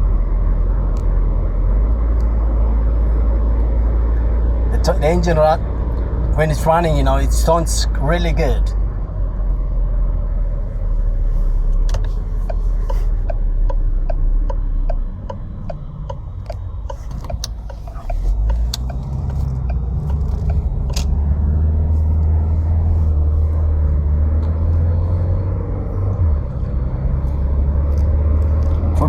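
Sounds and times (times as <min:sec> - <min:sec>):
car engine running: 0:00.0 - 0:29.0
person speaking: 0:04.7 - 0:05.6, 0:06.4 - 0:08.8
light regular ticking: 0:11.8 - 0:21.4.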